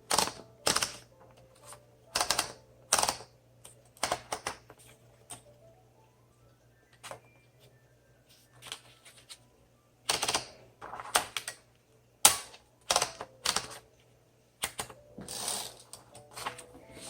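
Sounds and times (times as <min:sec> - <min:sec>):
typewriter typing: 0:00.0 - 0:03.3, 0:04.0 - 0:05.4, 0:10.1 - 0:11.6, 0:12.3 - 0:13.8, 0:14.6 - 0:17.0.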